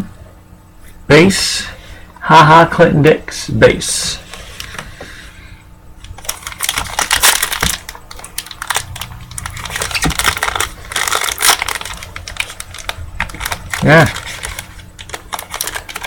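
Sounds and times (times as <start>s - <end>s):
foil wrapper crinkling and tearing: 6.1s - 16.0s.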